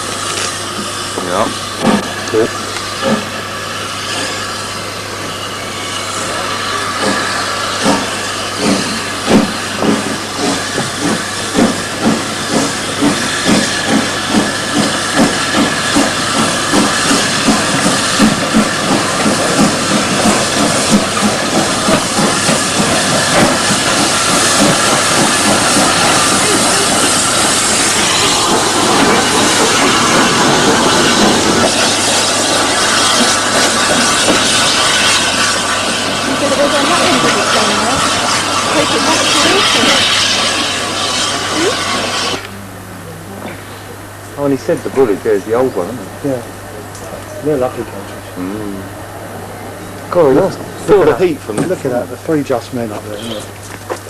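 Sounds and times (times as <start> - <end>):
steam locomotive exhaust beats: 0.0 - 54.0.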